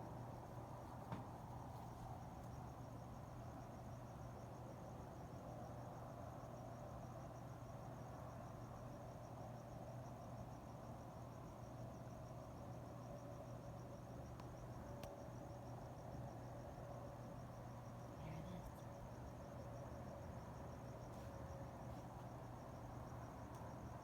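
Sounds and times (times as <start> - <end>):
crickets chirping: 0.0 - 24.0
low steady hum: 12.5 - 24.0.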